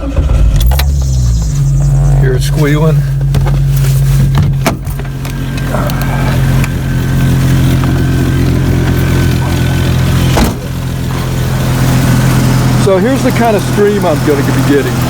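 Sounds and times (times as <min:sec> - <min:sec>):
drive belt squealing: 0:00.0 - 0:15.0
engine idling: 0:00.0 - 0:15.0
sharp clunks: 0:10.3 - 0:11.2.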